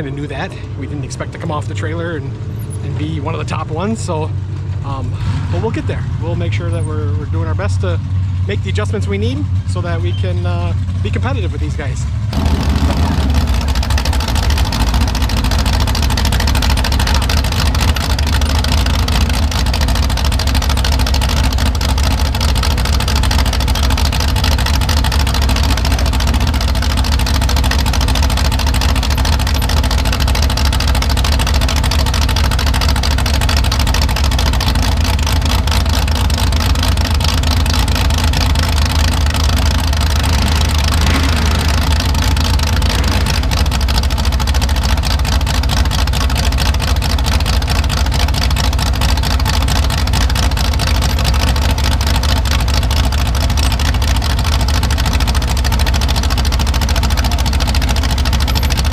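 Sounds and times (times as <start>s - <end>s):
tractor engine running loud: 0.0s - 58.9s.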